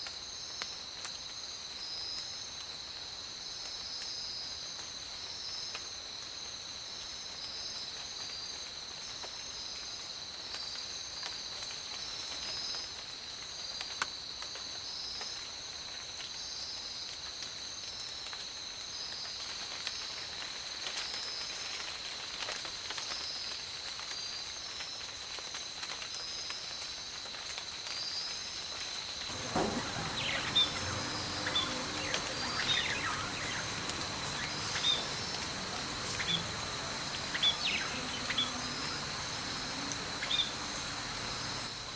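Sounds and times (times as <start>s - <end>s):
birds chirping: 29.3s - 41.9s
insects droning high-pitched: 29.3s - 41.9s
pulsing insect trill: 29.3s - 41.9s.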